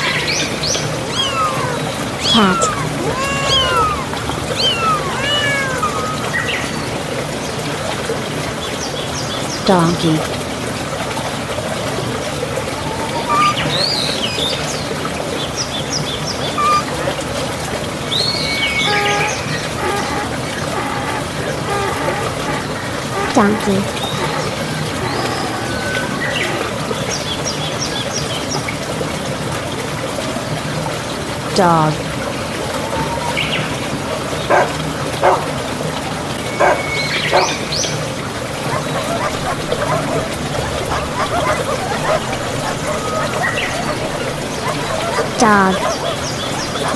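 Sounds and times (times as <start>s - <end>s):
trickle of running water: 0.0s - 46.9s
dog barking: 34.5s - 35.5s, 36.6s - 37.6s, 38.6s - 46.9s
songbirds chirping and singing: 38.6s - 46.9s.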